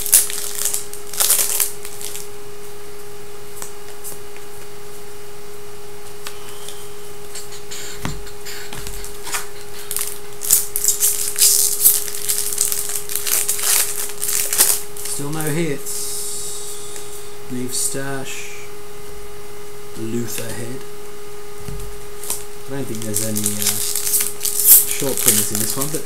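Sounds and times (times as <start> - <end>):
card pack wrappers crinkling: 0.0 - 2.3, 8.8 - 15.5, 21.8 - 26.0
steady low hum: 0.0 - 26.0
cards being handled: 8.7 - 15.5, 21.7 - 26.0.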